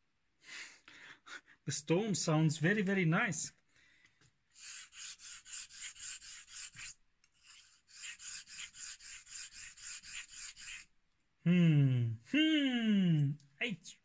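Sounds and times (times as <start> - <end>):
razor rasping on whetstone: 4.6 - 10.9.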